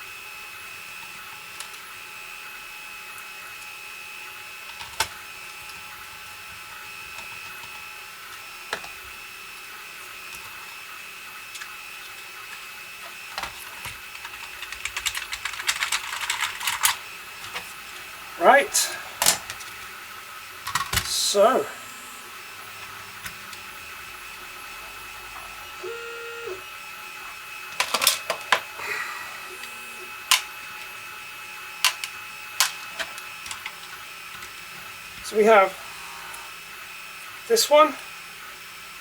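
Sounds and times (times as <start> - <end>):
plastic clicks and rattles: 13.4 - 17.6
faint high whine: 21.0 - 27.4.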